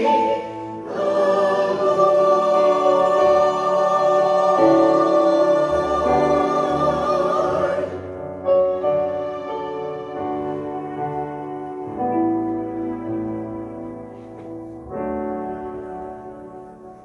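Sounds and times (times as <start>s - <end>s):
group singing a hymn: 0.0s - 8.4s
piano accompaniment: 0.0s - 17.0s.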